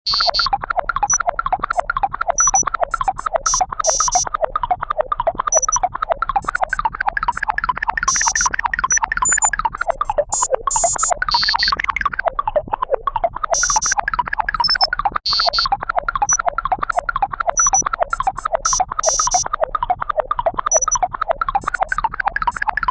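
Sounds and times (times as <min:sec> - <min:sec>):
synthesized blips: 0:00.1 - 0:04.4, 0:05.5 - 0:19.9, 0:20.5 - 0:22.9.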